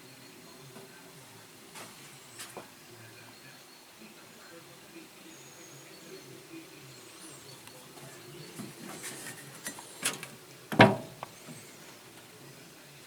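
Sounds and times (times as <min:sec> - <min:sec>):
loud metal clank: 0:08.6 - 0:11.7.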